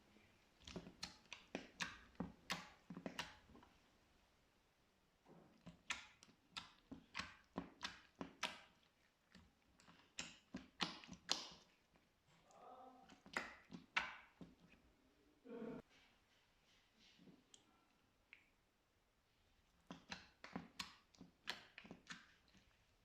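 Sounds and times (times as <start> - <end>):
slime squelching: 0.0 - 4.3, 5.2 - 14.9, 17.3 - 23.0
slime popping and clicking: 9.8 - 11.8.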